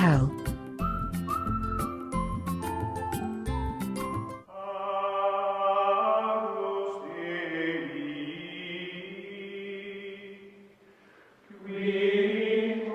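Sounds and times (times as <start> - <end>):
chant-like held tones music: 4.4 - 10.7, 11.5 - 12.9.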